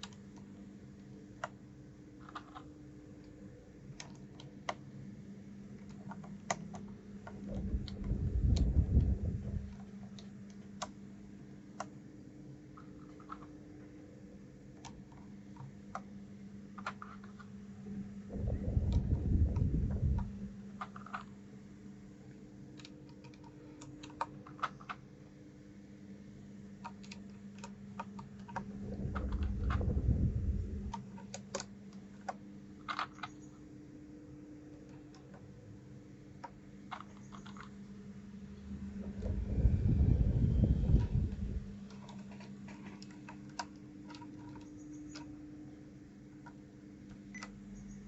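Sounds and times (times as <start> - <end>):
steady low hum: 0.0 - 48.0
low rumbles: 7.5 - 9.8, 18.3 - 20.6, 28.6 - 31.1, 38.6 - 41.8.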